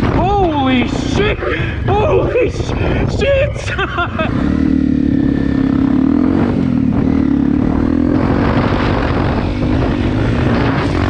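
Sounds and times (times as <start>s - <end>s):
motorcycle engine running: 0.0s - 11.0s
rough riding noise: 0.0s - 11.0s
rushing wind: 0.0s - 11.0s.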